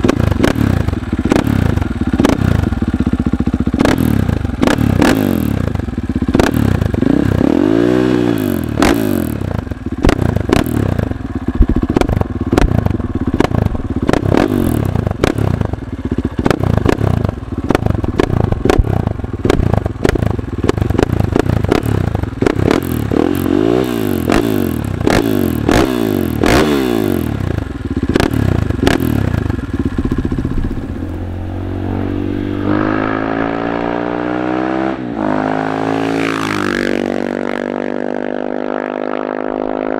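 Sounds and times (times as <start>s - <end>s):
motorcycle engine revving: 0.0s - 39.9s
exhaust popping and crackling: 11.4s - 14.4s, 16.4s - 21.8s.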